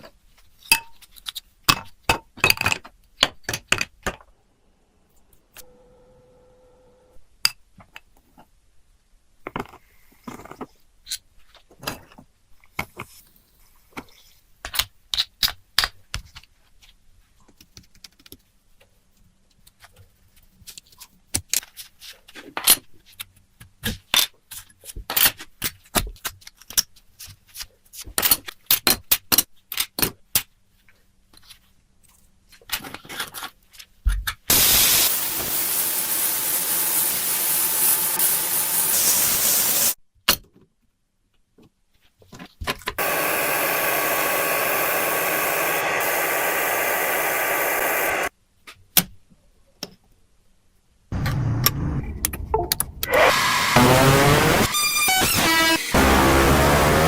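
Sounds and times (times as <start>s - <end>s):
loud spray hiss: 34.5s - 40.0s, 43.0s - 48.3s, 53.1s - 57.0s.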